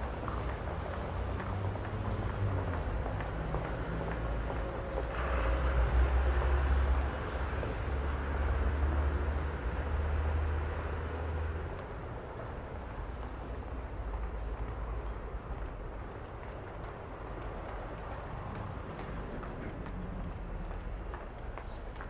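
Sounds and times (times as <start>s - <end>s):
vehicle engine rumble passing: 0.0s - 12.1s
road noise: 0.0s - 22.0s.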